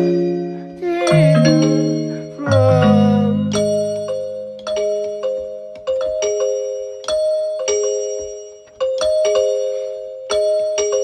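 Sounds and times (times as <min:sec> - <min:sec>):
harp playing slow notes: 0:00.5 - 0:04.4.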